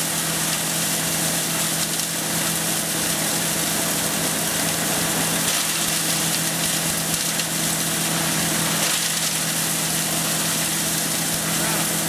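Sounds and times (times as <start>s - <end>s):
wood chipper engine running: 0.0s - 12.0s.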